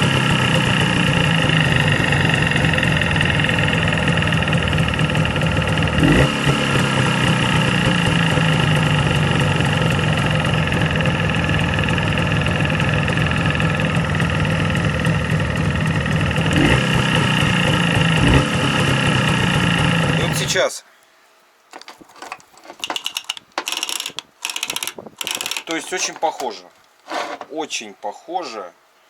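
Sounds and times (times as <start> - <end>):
motorcycle engine idling: 0.0 - 18.2.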